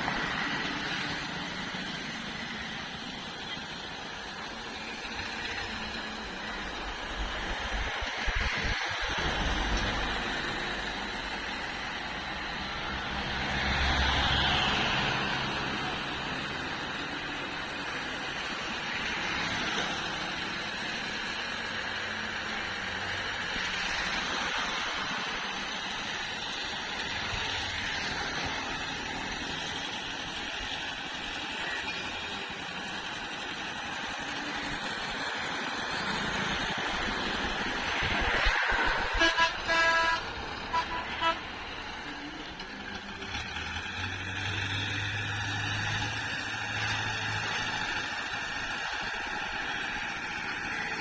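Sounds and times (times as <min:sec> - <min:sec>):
road vehicle noise: 0:00.0 - 0:51.0
vehicle passing: 0:35.4 - 0:42.3.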